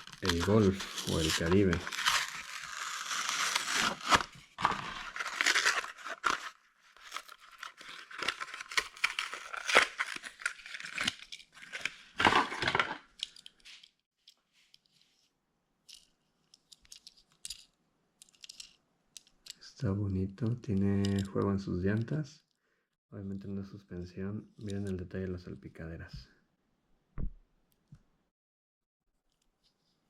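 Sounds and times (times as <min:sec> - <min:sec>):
packaging tearing and crinkling: 0:00.0 - 0:13.1.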